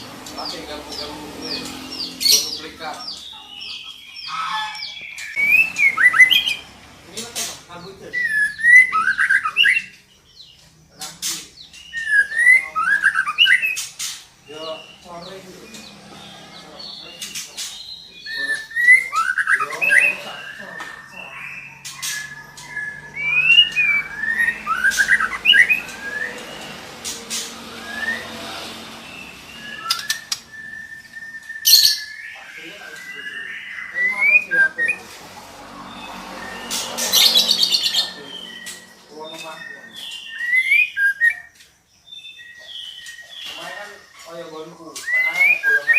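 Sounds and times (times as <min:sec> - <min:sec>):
harsh rasping bird notes: 0:00.0 - 0:45.9
bird whistled call: 0:03.3 - 0:06.6, 0:08.1 - 0:09.9, 0:11.8 - 0:13.9, 0:17.8 - 0:26.7, 0:27.4 - 0:28.5, 0:29.1 - 0:35.0, 0:36.4 - 0:43.7.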